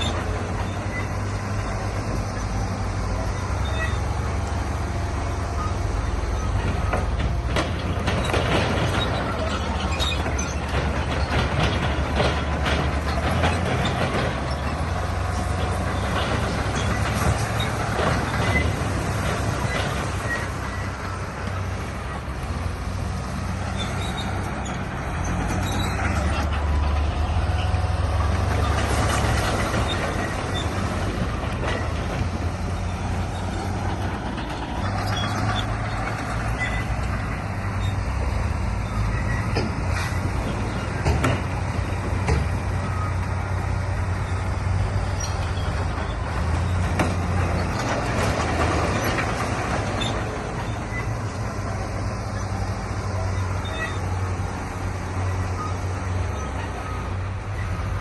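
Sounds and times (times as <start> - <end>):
bulldozer diesel engine running: 0.0 - 58.0
steel tracks clanking: 0.0 - 58.0.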